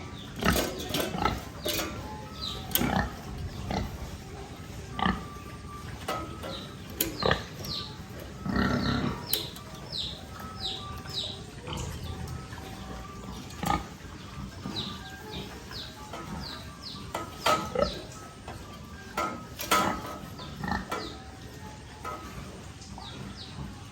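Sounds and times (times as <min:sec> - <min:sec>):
piglets squealing and grunting: 0:07.1 - 0:10.1.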